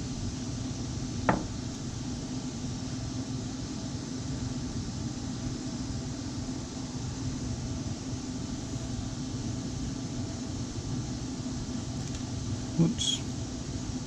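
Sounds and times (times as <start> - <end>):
steady mechanical hum: 0.0 - 14.0
sharp knock: 1.3 - 1.5.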